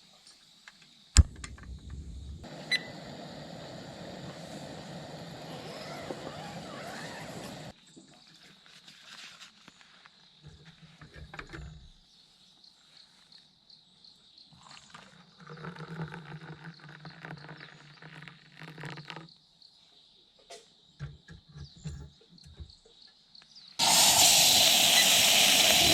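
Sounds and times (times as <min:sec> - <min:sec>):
insects chirping: 0:00.2 - 0:07.7
low hum: 0:01.2 - 0:04.2.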